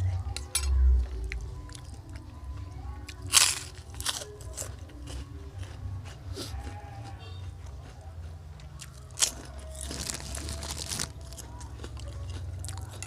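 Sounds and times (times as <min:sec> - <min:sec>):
background music: 0:00.0 - 0:06.4
person chewing crunchy food: 0:03.0 - 0:13.0.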